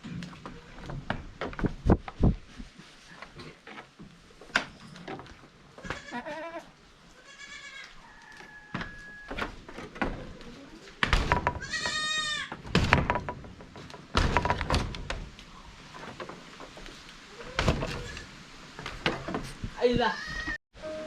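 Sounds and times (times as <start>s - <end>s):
goats bleating: 5.8s - 8.0s, 11.6s - 12.5s
knocks: 11.0s - 15.4s.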